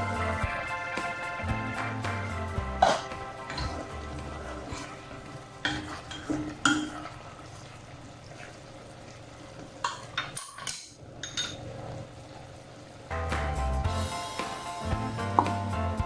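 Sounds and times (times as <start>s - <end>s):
utensil stirring in a pot: 0.0s - 13.1s
utensil clinking against pan: 5.6s - 7.2s, 9.8s - 11.6s.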